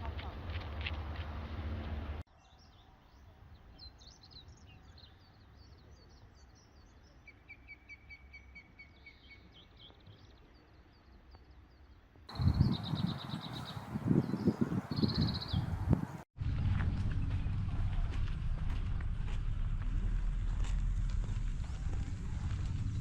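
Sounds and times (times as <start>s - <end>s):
songbirds chirping: 2.3s - 16.2s
loud low noise: 16.4s - 23.0s.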